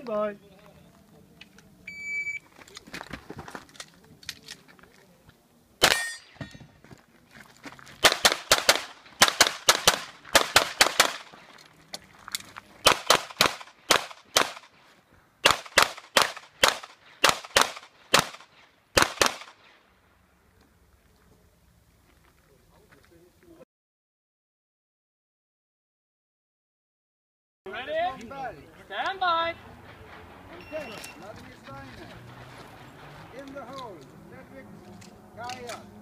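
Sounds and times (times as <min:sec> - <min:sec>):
shot timer beep: 0:01.9 - 0:02.4
pistol firing quick shots: 0:08.0 - 0:11.3, 0:12.8 - 0:14.7, 0:15.4 - 0:19.6.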